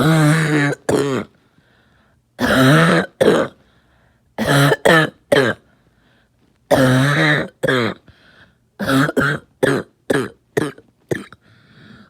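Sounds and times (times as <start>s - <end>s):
person coughing: 0.0s - 1.3s, 2.4s - 3.6s, 4.4s - 5.6s, 6.7s - 8.0s, 8.8s - 11.4s.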